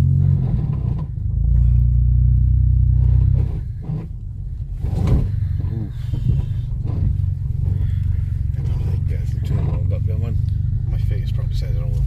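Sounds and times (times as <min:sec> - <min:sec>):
car engine running: 0:00.0 - 0:12.0
car thud: 0:02.9 - 0:10.8.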